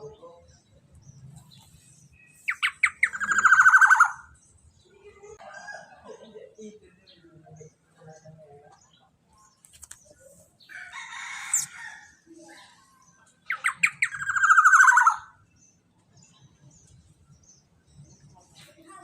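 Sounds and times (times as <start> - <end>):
bird giving harsh scratchy calls: 1.8 - 4.3, 11.4 - 11.8, 13.5 - 15.3.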